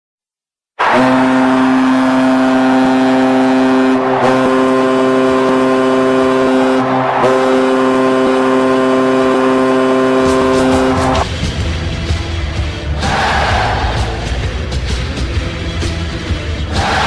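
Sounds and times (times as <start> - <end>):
goal horn blasts: 0.8 - 11.2.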